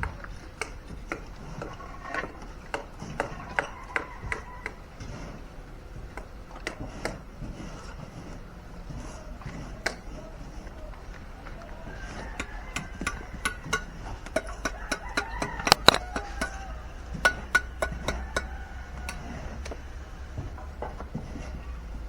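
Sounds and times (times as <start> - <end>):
building site background noise: 0.0 - 22.0
sharp knocks: 12.4 - 19.2.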